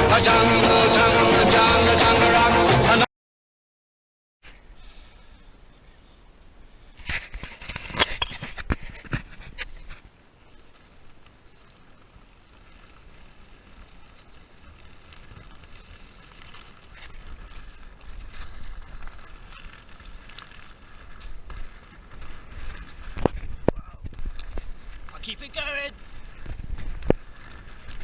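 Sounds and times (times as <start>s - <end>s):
skates rolling over dirt trail: 4.4s - 28.0s.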